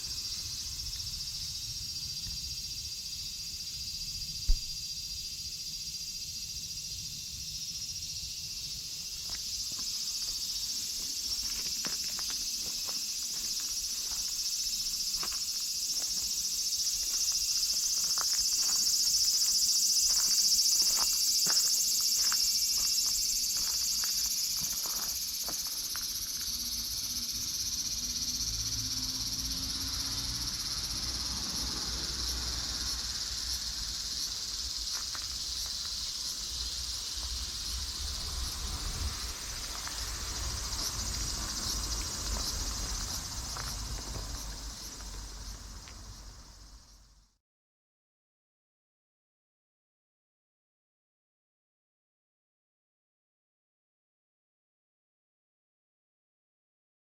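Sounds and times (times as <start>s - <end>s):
insects chirping: 0.0s - 47.4s
sharp knock: 4.5s - 4.8s.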